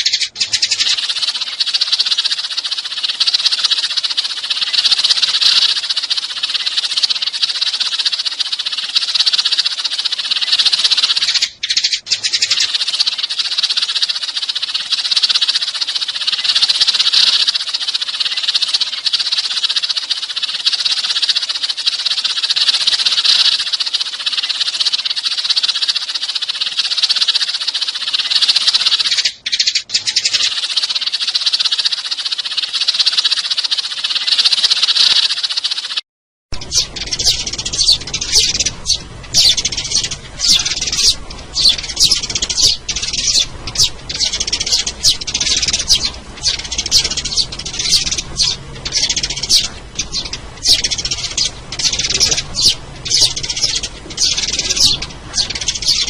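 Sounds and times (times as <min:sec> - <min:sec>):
sparrows chirping: 0:00.0 - 0:56.0.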